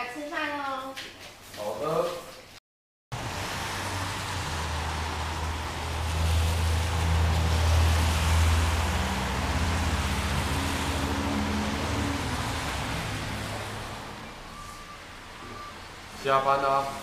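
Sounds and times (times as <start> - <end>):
vehicle engine drone: 3.1 - 16.2
road noise: 3.1 - 17.0.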